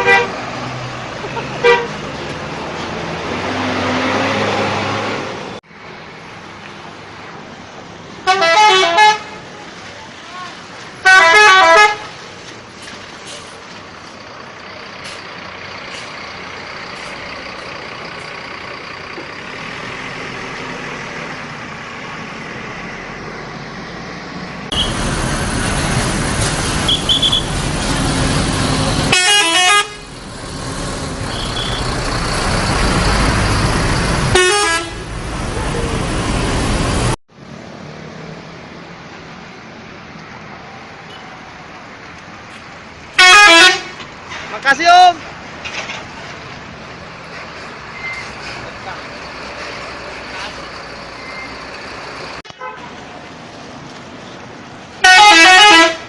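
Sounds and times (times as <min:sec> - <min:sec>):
multi-tone bus air horn: 0:00.0 - 0:00.4, 0:01.3 - 0:02.0, 0:08.2 - 0:09.4, 0:11.0 - 0:12.1, 0:29.1 - 0:30.1, 0:34.3 - 0:35.1, 0:43.2 - 0:44.0, 0:52.6 - 0:52.9, 0:55.0 - 0:56.0
large bus passing: 0:00.0 - 0:56.0
traffic noise: 0:00.0 - 0:56.0.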